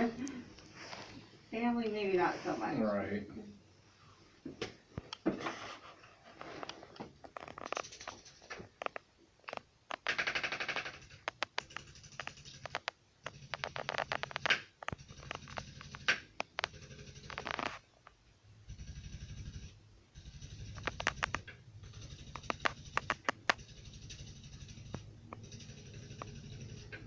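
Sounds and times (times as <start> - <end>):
sharp clicks: 6.6 - 17.8, 20.4 - 27.0
rapid mechanical tapping: 7.3 - 27.0.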